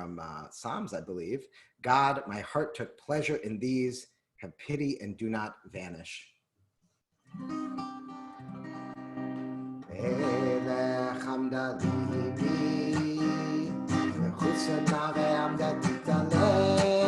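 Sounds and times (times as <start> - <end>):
acoustic guitar strumming: 7.3 - 17.0.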